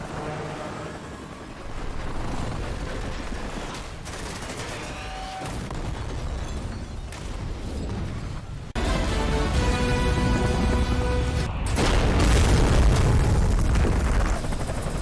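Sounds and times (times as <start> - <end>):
explosion booms: 11.6 - 14.2.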